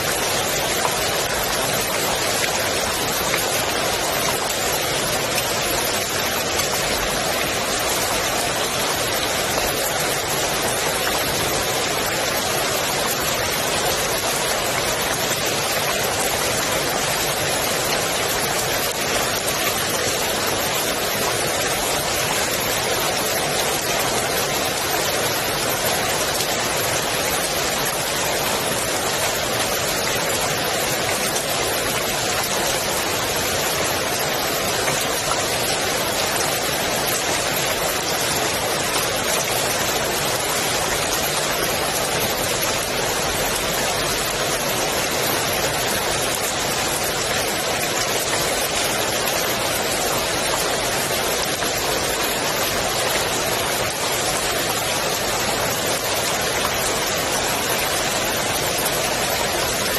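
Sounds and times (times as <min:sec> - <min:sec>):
rain falling on pool water: 0:00.0 - 0:59.9.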